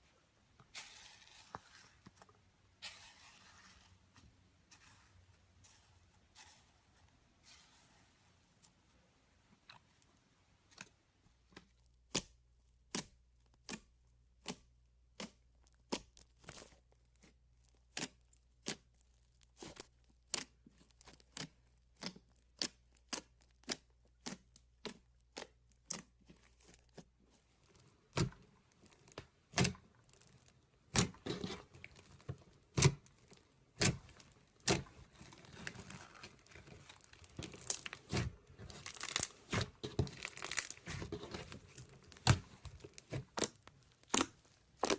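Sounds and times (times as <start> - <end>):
slime crackling crinkle: 15.6 - 44.9
slime clicking and popping: 29.0 - 44.9.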